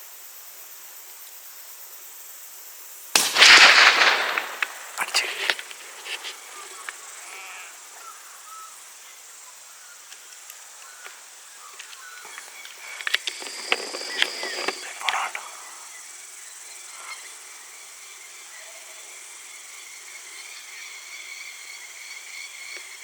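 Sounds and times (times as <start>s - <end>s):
insects chirring: 0.0s - 23.0s
clicks and rustling: 3.2s - 7.0s, 11.8s - 15.4s.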